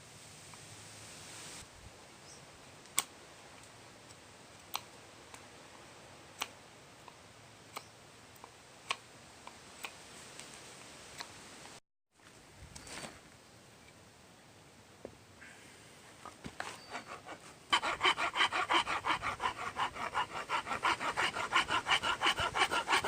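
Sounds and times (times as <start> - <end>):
steady low hiss: 0.0 - 16.7.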